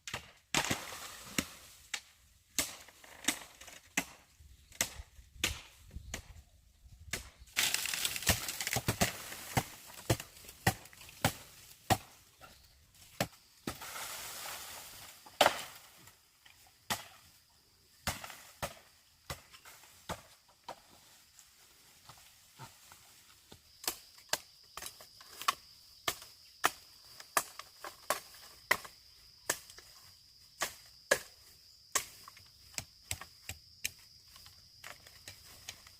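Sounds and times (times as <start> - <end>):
bamboo chopping knocks: 8.2 - 12.2.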